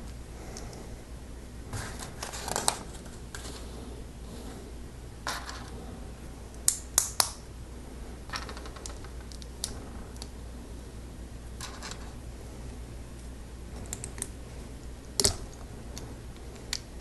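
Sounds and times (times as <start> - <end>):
plastic bricks clicking together: 8.3 - 10.3.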